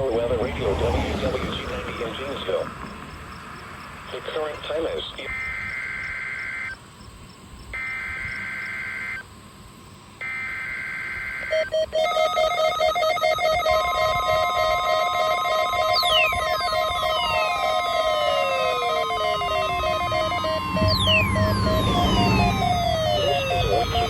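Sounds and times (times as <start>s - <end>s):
two-tone digital data warble: 4.0s - 6.8s, 7.8s - 9.3s, 10.2s - 24.0s
fast-pulsing electronic alert tone: 10.2s - 24.0s
steady tone: 12.0s - 24.0s.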